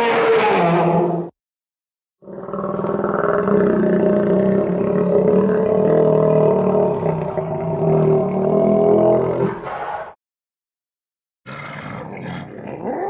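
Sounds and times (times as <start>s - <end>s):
crocodile roar: 2.2s - 10.2s, 11.5s - 13.0s.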